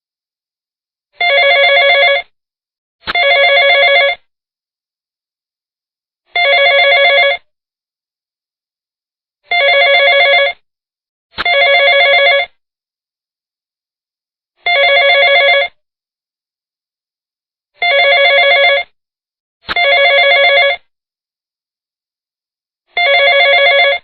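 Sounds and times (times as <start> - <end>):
telephone electronic trilling ring: 1.2 - 2.2, 3.1 - 4.2, 6.4 - 7.4, 9.5 - 10.6, 11.4 - 12.5, 14.7 - 15.8, 17.8 - 18.9, 19.7 - 20.8, 23.0 - 24.0.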